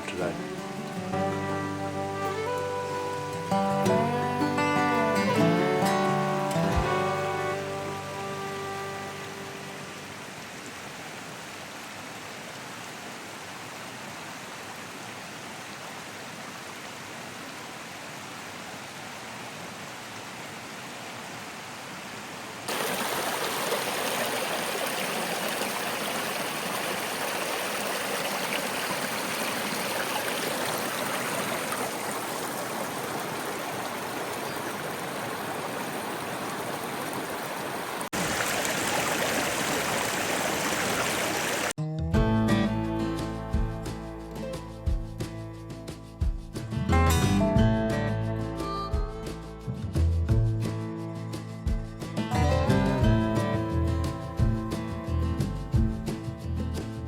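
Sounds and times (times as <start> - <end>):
creek water flowing: 0.0 - 41.8.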